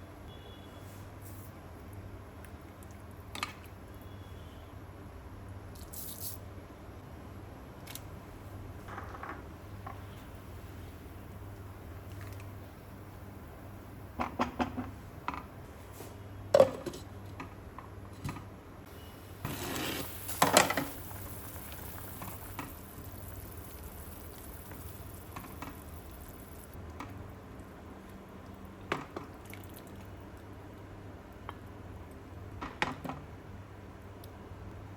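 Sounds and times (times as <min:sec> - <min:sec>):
low steady hum: 0:06.4 - 0:32.6.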